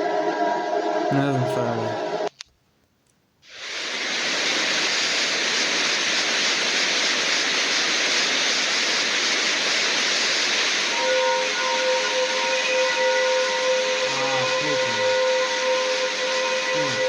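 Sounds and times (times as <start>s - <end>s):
steady rushing hiss: 3.4s - 11.0s.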